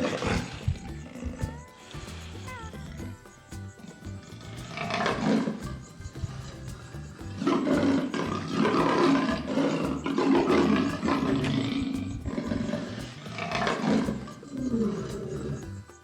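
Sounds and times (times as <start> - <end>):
background music with steady beat: 0.0 - 16.0.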